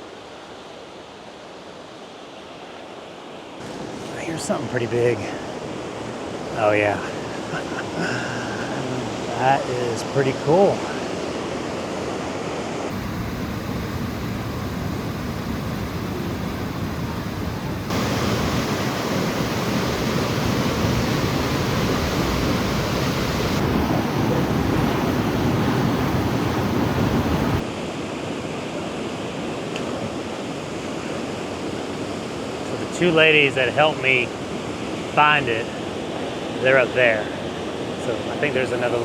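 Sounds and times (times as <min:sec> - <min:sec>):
waterfall roaring: 0:03.6 - 0:27.7.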